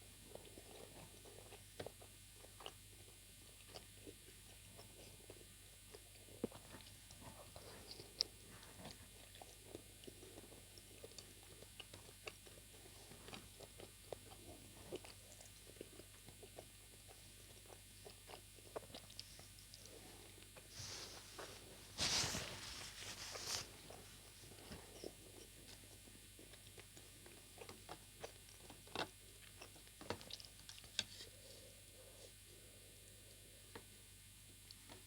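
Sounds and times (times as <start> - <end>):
chewing with wet mouth clicks: 3.6 - 6.9, 7.8 - 20.7.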